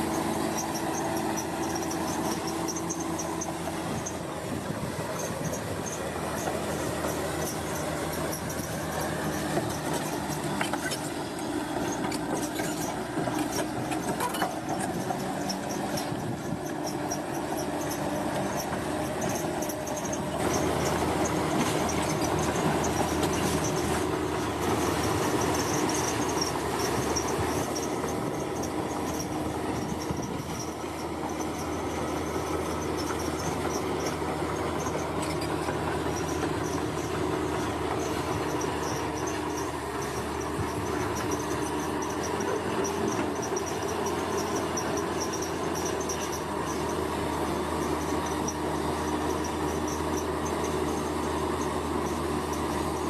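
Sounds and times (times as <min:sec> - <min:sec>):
heavy machinery engine rumble: 0:00.0 - 0:53.0
insects chirping: 0:16.7 - 0:47.0.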